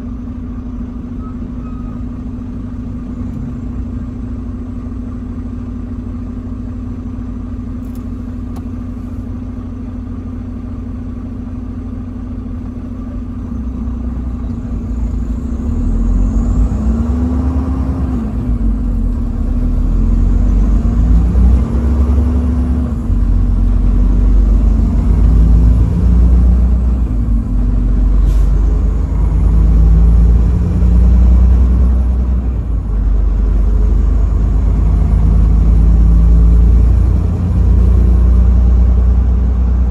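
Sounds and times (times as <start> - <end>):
truck engine idling: 0.0 - 39.9
truck pulling away through gears: 13.4 - 39.9.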